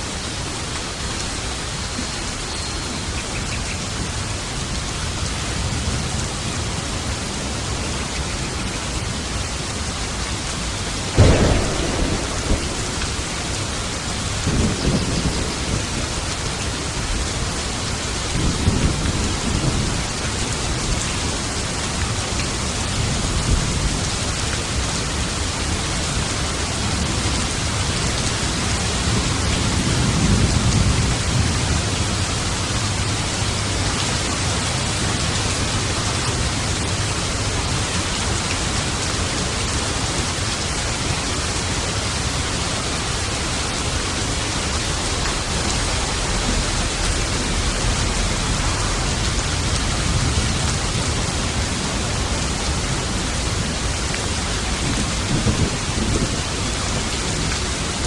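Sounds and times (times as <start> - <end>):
heavy rain: 0.0 - 58.0
rolling thunder rumbles: 10.5 - 21.0, 42.1 - 58.0
sharp thunderclap: 11.1 - 17.5, 44.4 - 53.2.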